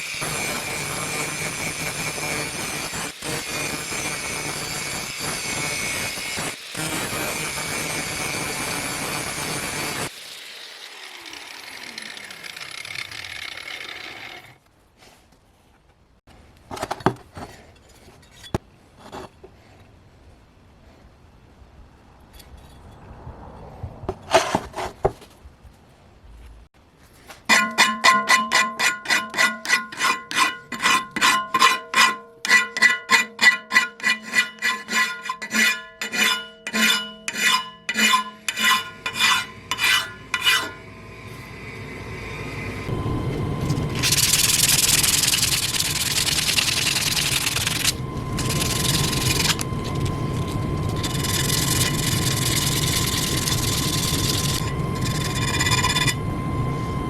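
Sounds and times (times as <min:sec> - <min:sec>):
filing across steel blade: 0:27.5 - 0:40.8, 0:44.0 - 0:56.2
blade ringing: 0:42.9 - 0:57.0.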